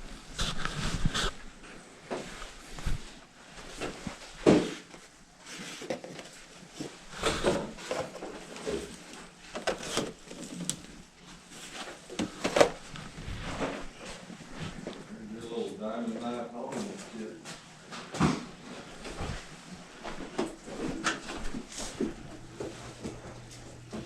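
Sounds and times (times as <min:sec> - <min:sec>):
objects knocking and rustling: 0:02.1 - 0:15.1.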